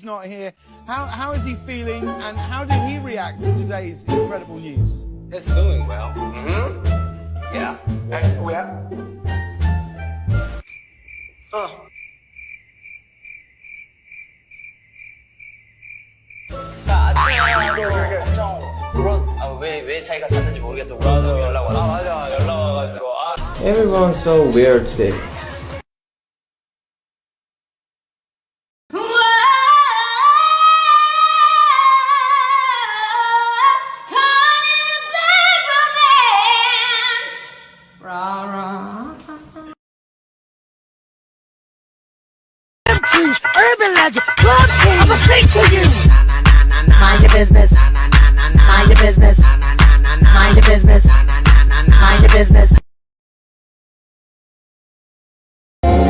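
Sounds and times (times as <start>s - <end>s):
cricket chirping: 10.6s - 16.7s
loud music: 16.9s - 19.0s, 23.4s - 25.8s, 42.9s - 52.8s
person speaking: 23.4s - 25.4s
high-pitched wordless singing: 28.9s - 39.8s, 43.0s - 52.8s.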